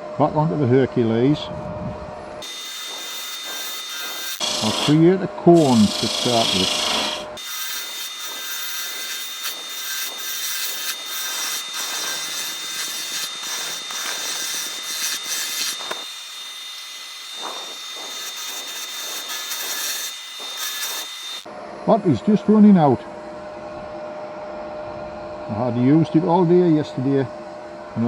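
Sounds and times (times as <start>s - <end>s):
lathe high whine: 0.9s - 21.8s
lathe tool scraping wood: 2.4s - 21.5s.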